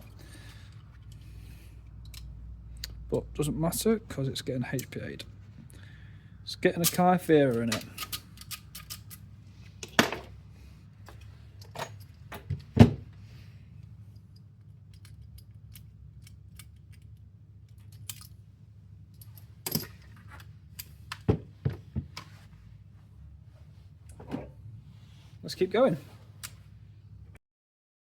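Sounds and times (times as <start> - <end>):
small parts and tools clicking: 0.1 - 3.0, 6.8 - 10.1, 13.8 - 18.4.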